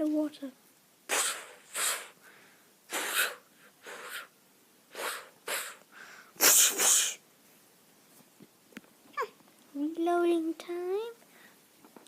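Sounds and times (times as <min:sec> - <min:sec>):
toy pistol hissing shots: 0:01.1 - 0:02.2, 0:02.9 - 0:04.3, 0:06.4 - 0:07.2.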